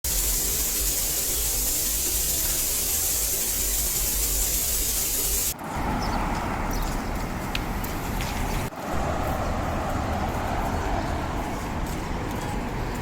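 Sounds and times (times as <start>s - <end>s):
rain falling: 0.1s - 5.8s.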